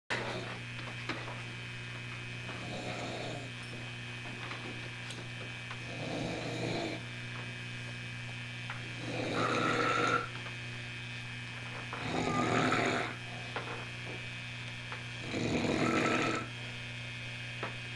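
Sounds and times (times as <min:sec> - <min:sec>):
steady low hum: 0:00.1 - 0:17.9
person snoring: 0:02.6 - 0:03.5, 0:05.8 - 0:07.0, 0:09.0 - 0:10.4, 0:12.0 - 0:13.5, 0:15.2 - 0:16.6.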